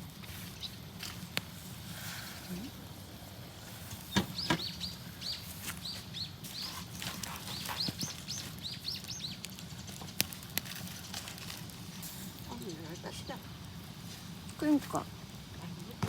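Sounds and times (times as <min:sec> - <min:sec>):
small bird chirping: 0:04.0 - 0:11.4.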